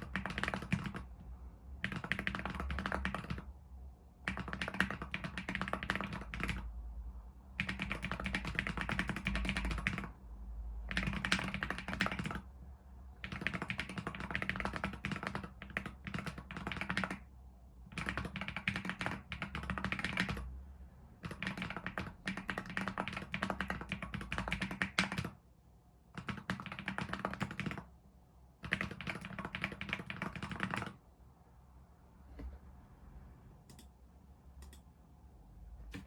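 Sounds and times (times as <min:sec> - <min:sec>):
keyboard typing: 0:00.0 - 0:01.2, 0:01.8 - 0:03.5, 0:04.2 - 0:06.7, 0:07.6 - 0:10.2, 0:10.9 - 0:12.5, 0:13.2 - 0:17.3, 0:17.9 - 0:20.5, 0:21.2 - 0:25.4, 0:26.1 - 0:27.9, 0:28.6 - 0:31.0, 0:33.7 - 0:33.9, 0:34.6 - 0:34.8.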